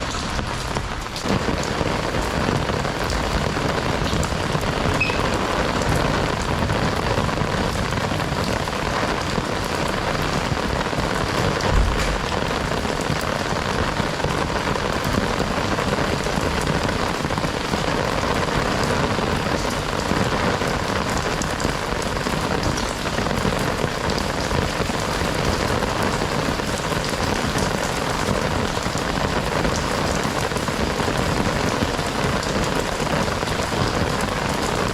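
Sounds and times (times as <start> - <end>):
heavy rain falling: 0.0 - 34.9
low thump: 11.6 - 12.4.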